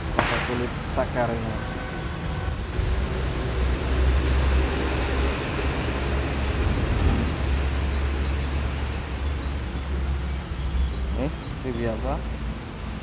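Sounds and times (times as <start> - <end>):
river rushing: 2.0 - 13.0
low rumble: 2.5 - 11.7.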